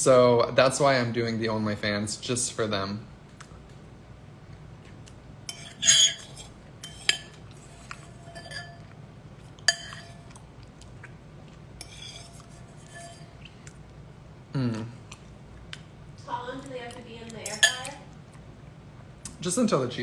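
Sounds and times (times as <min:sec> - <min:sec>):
kitchenware and cutlery clattering: 0:05.5 - 0:09.0, 0:09.6 - 0:10.4, 0:17.4 - 0:18.0.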